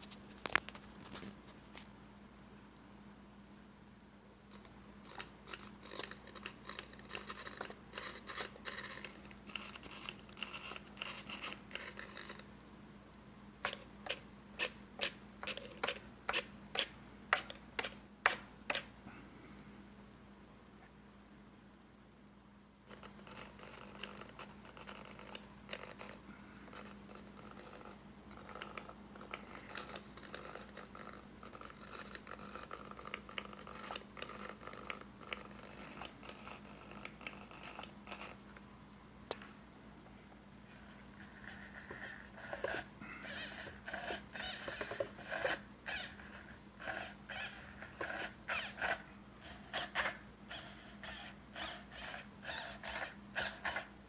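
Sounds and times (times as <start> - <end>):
faint steady hum: 0.0 - 54.0
scratching and clicking handling noises: 4.5 - 12.5, 22.9 - 38.7, 40.2 - 46.6.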